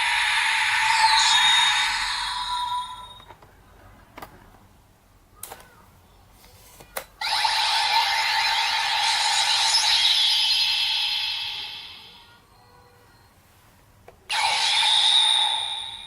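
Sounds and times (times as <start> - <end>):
electronic toy sound effect: 0.0 - 3.3, 7.2 - 12.4, 14.3 - 16.0.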